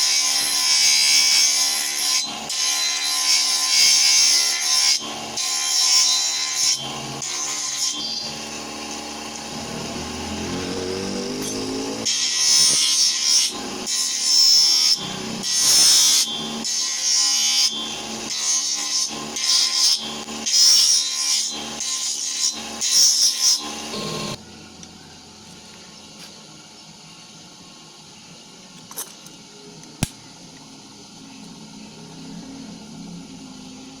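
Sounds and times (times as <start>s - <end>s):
rising squeal: 9.5s - 12.6s.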